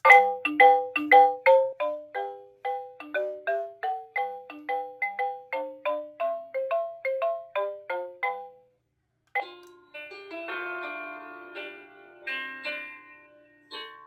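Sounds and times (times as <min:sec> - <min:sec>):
doorbell chime melody: 0:00.0 - 0:08.6.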